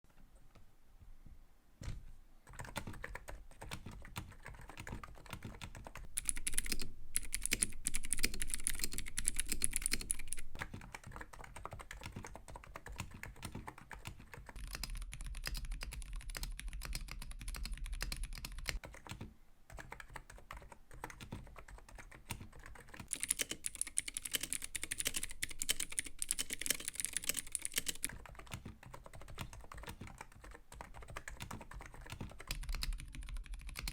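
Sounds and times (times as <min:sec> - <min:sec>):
fast typing on keyboards: 0:02.5 - 0:33.9.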